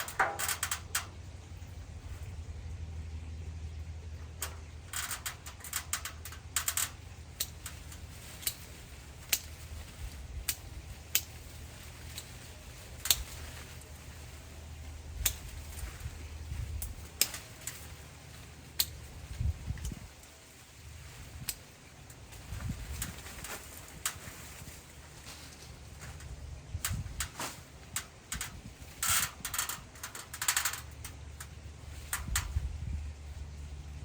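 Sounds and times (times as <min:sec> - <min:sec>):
low steady hum: 0:00.0 - 0:34.0
branches snapping: 0:15.2 - 0:20.1, 0:21.2 - 0:30.8.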